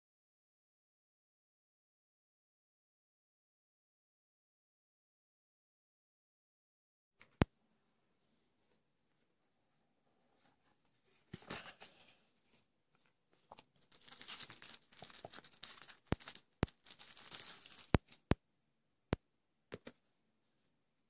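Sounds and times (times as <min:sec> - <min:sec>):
plastic wrap crinkling and tearing: 0:13.5 - 0:18.3.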